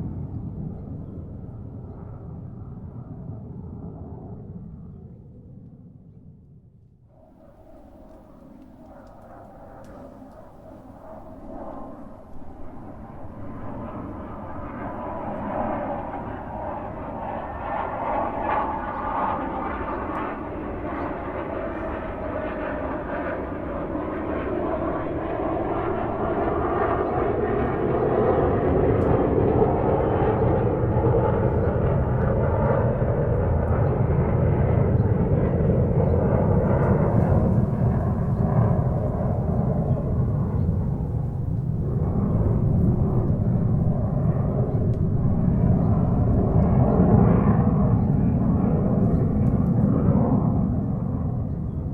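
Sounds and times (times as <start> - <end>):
airliner cabin engine rush: 25.1 - 51.9.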